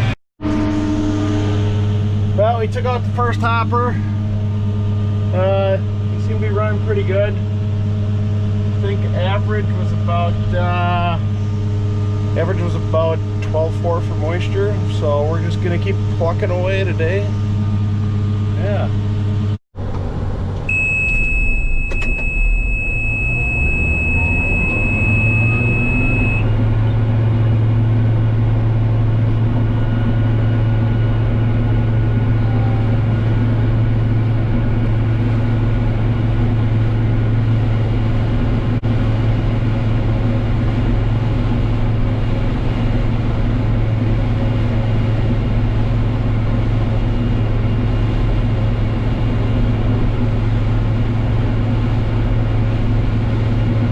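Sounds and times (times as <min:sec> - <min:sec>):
combine harvester engine droning: 0:00.0 - 0:53.9
high warning beep: 0:20.7 - 0:26.6.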